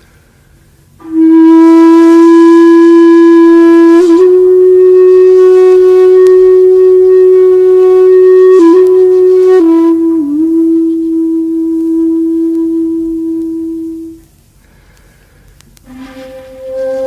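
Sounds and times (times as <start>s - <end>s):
wind instrument long note: 1.0s - 14.3s, 15.8s - 17.0s.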